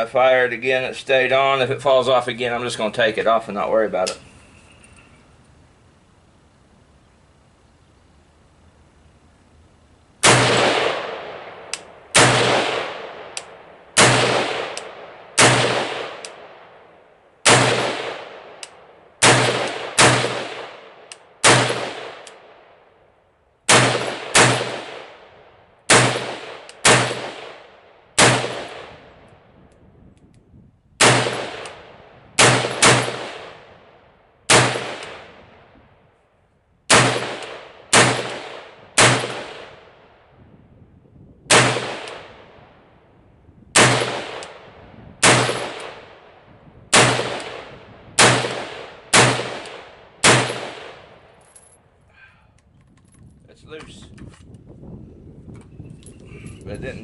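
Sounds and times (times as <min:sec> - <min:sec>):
rifle shots with ringing echo: 0:10.2 - 0:23.1, 0:23.7 - 0:29.5, 0:31.0 - 0:35.8, 0:36.9 - 0:40.3, 0:41.5 - 0:42.9, 0:43.7 - 0:51.9.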